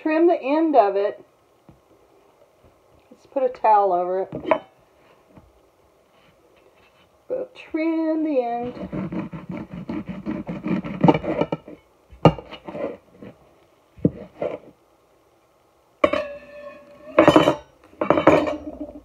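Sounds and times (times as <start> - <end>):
knife sawing through corn stalk: 8.6 - 11.4
clattering: 16.0 - 19.0
knife and dish knocks and clinks: 16.0 - 19.0.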